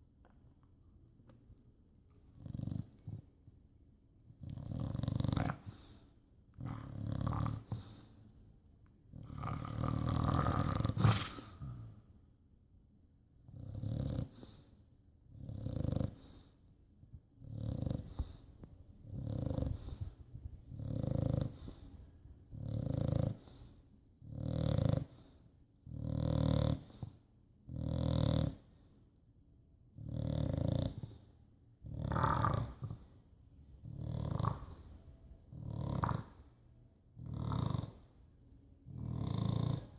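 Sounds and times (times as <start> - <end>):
dog snoring: 2.3 - 3.3, 4.4 - 8.2, 9.1 - 12.0, 13.4 - 16.6, 17.4 - 29.0, 29.9 - 33.2, 33.8 - 39.9.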